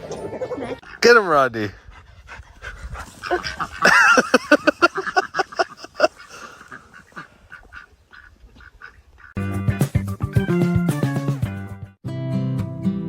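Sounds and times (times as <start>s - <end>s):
duck quacking: 4.6s - 10.5s.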